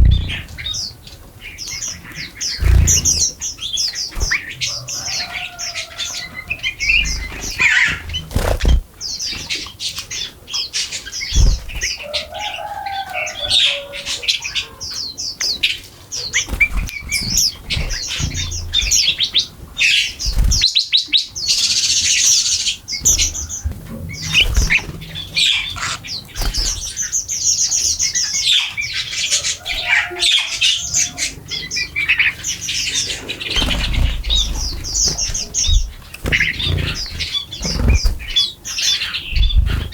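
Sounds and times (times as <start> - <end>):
low thumps and knocks: 0.0 - 0.7, 33.6 - 38.4
wings fluttering: 0.0 - 0.9, 2.4 - 9.6, 11.2 - 12.7, 16.3 - 20.7, 23.0 - 27.2, 32.1 - 39.9
small birds chirping: 0.0 - 39.9
lower sliding bird calls: 2.4 - 8.7, 29.4 - 39.9.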